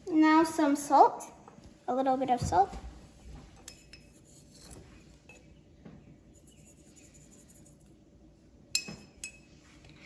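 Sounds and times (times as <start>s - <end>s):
spoon clinking against a bowl: 3.6s - 4.3s, 8.7s - 9.5s.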